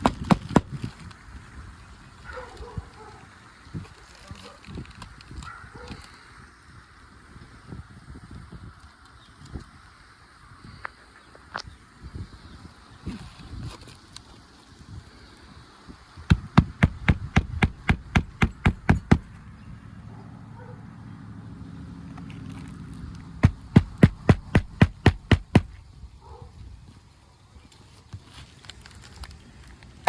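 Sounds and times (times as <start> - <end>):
hammer striking nails: 0.0 - 0.8, 16.3 - 19.4, 23.4 - 25.8.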